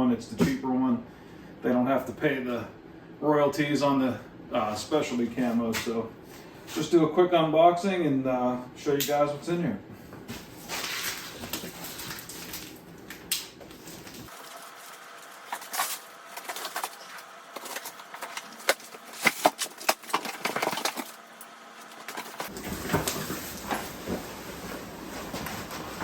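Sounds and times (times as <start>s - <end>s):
packaging crinkling: 10.6s - 26.0s.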